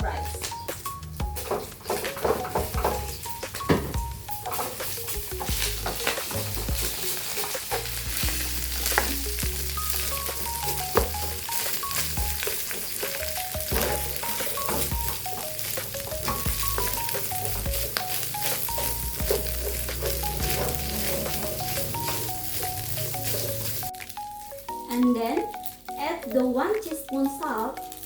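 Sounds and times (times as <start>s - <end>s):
light melody with bass: 0.0s - 28.0s
rice sizzling in oil: 0.0s - 28.0s.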